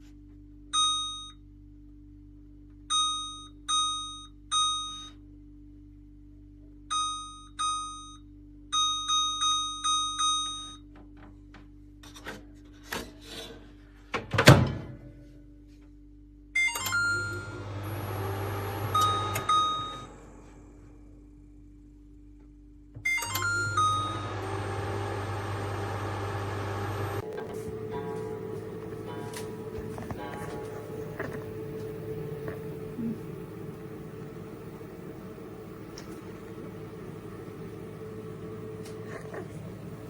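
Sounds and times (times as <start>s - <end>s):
microwave keypad beeps: 0.8s - 1.4s, 2.9s - 5.2s, 6.9s - 8.2s, 8.8s - 10.8s, 16.6s - 20.1s, 23.1s - 25.6s
microwave running hum: 13.8s - 40.0s.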